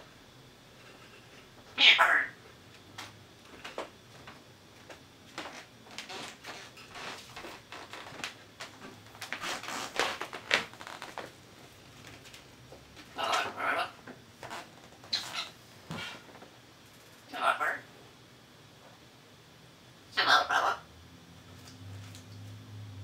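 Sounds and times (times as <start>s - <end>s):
parrot call: 1.8s - 2.4s, 13.2s - 14.0s, 17.3s - 17.9s, 20.1s - 20.9s.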